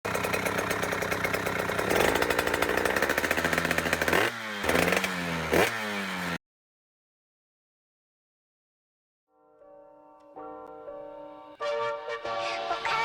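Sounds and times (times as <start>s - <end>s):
dirt bike engine revving: 0.1s - 6.4s.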